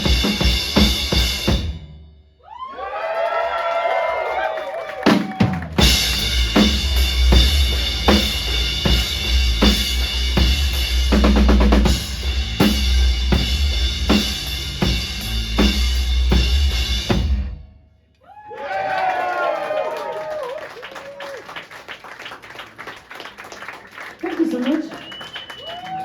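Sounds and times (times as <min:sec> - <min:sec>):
live band playing instrumental: 0:00.0 - 0:01.8, 0:05.8 - 0:17.4
drum fill: 0:00.0 - 0:01.9, 0:05.1 - 0:17.6.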